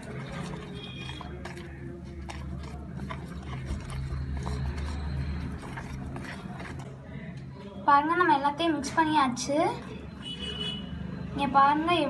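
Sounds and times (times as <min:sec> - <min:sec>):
utensil scraping mixing bowl: 0:00.0 - 0:07.2.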